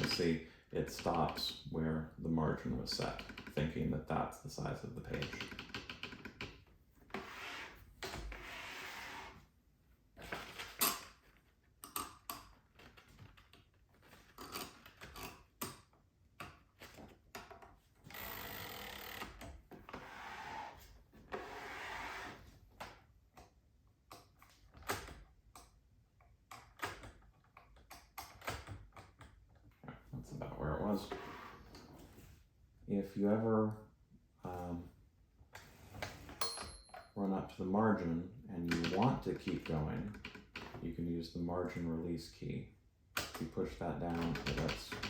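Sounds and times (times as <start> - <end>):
typewriter clicks and clacks: 44.1 - 45.0.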